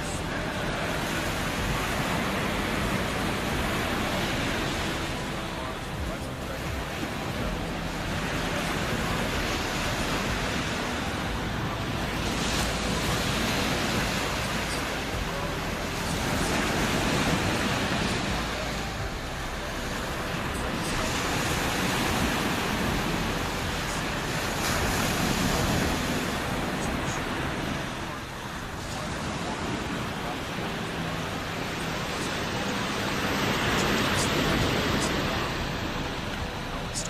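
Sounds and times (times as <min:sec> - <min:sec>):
ocean surf breaking on beach: 0:00.0 - 0:37.0.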